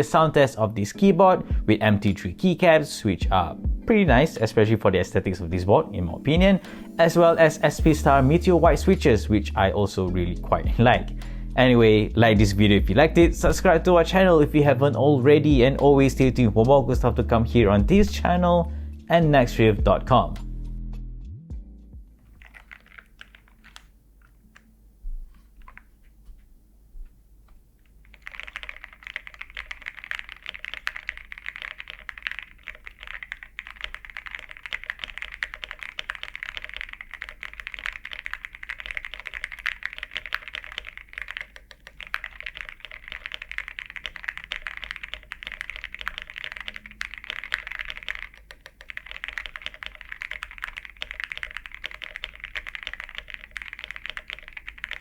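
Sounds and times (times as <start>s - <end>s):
mechanical keyboard typing: 6.3s - 9.0s, 22.3s - 24.7s, 25.4s - 25.9s, 28.0s - 55.0s.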